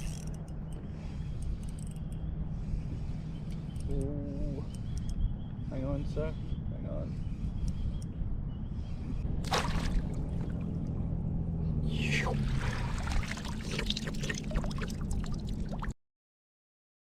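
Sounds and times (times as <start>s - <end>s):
steady low hum: 0.0s - 15.8s
water splashing and trickling: 9.4s - 11.2s, 11.9s - 16.0s.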